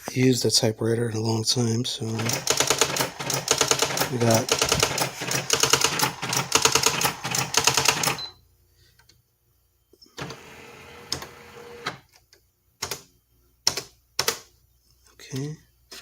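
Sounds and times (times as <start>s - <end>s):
typewriter printing rapid strikes: 2.2s - 8.3s.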